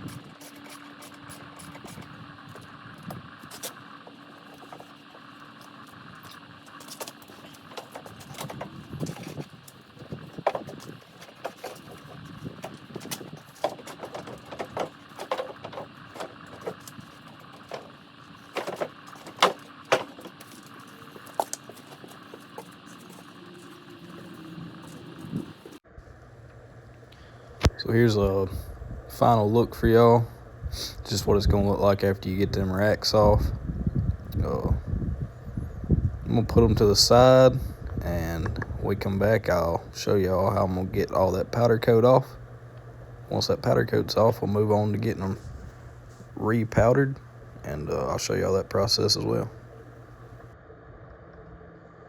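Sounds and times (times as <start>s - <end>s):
tools and metal parts clinking: 0.0s - 25.8s
steady low hum: 0.0s - 52.0s.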